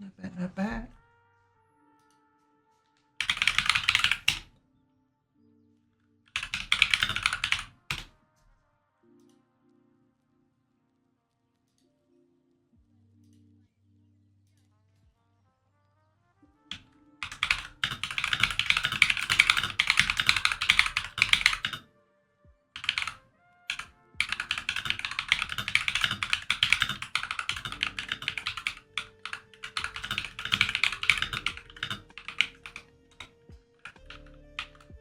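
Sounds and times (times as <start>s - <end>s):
fast typing on mechanical keyboard: 3.2s - 4.5s, 6.3s - 8.1s, 16.7s - 21.8s, 22.8s - 35.0s.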